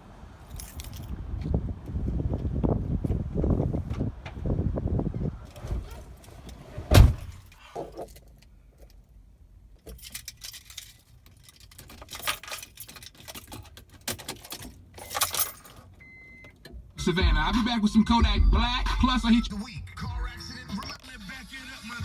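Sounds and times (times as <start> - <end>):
keys jangling: 0.5 - 1.2, 9.8 - 15.9
loud thump: 6.9 - 7.4.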